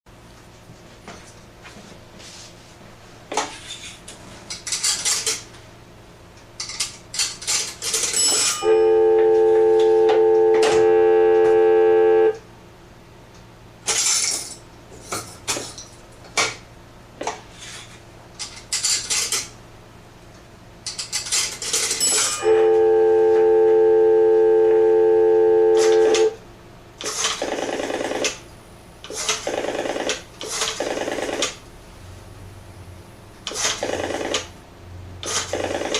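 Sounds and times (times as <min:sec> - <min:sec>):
steady telephone tone: 0:08.3 - 0:12.4, 0:22.1 - 0:26.4.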